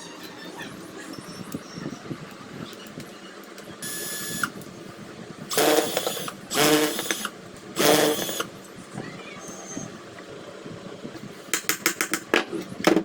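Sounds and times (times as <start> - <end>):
motor whine: 3.8 - 4.7, 5.4 - 8.6
power tool motor buzzing: 5.5 - 8.5.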